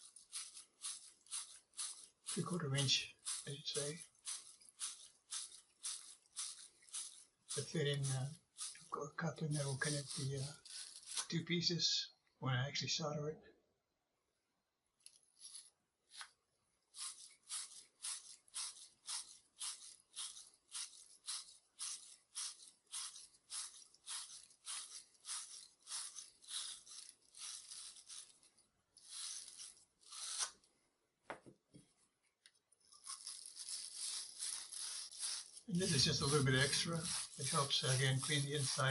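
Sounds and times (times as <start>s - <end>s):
wire brush scrubbing metal: 0.0s - 11.3s, 33.0s - 38.9s.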